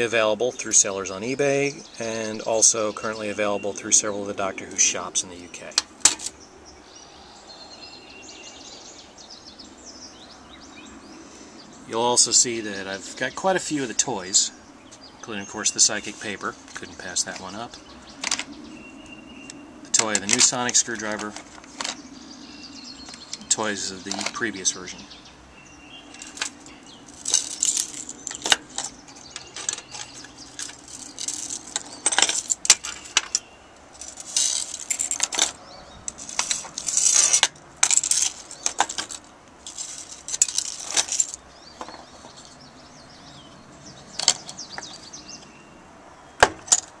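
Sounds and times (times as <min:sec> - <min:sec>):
keys jingling: 0:26.1 - 0:42.6.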